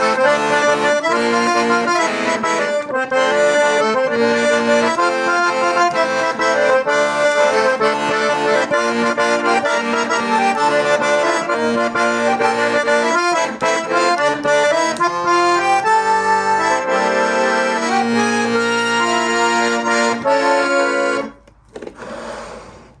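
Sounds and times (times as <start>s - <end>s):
accordion playing melody: 0.0s - 22.8s.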